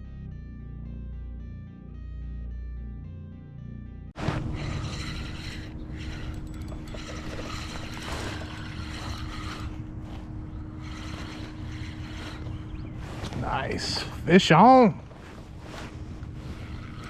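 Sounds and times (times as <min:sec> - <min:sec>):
steady low hum: 0:04.2 - 0:17.0
fishing reel whirring and clicking: 0:04.5 - 0:13.2, 0:16.4 - 0:17.0.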